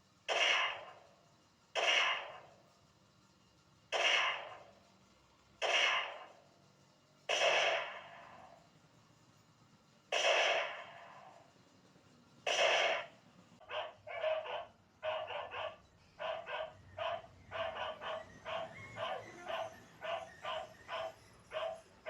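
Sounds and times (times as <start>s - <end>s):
small dog yapping: 13.7s - 21.8s.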